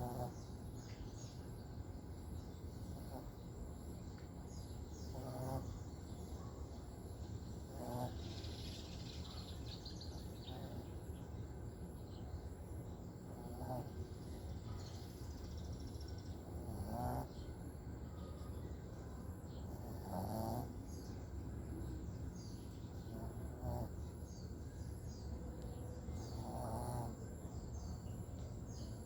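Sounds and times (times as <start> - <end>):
dog snoring: 0.0 - 0.7, 2.8 - 3.4, 5.0 - 5.8, 7.6 - 8.2, 10.1 - 10.8, 13.2 - 14.0, 16.4 - 17.4, 19.7 - 21.1, 22.9 - 24.1, 26.2 - 27.3.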